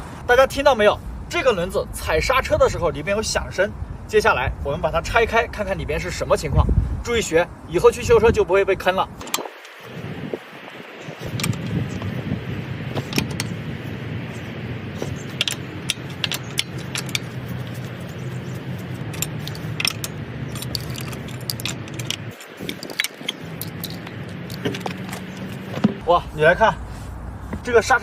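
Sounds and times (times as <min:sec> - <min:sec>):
steady low hum: 0:09.2 - 0:27.6
metal tools clinking: 0:14.9 - 0:26.0.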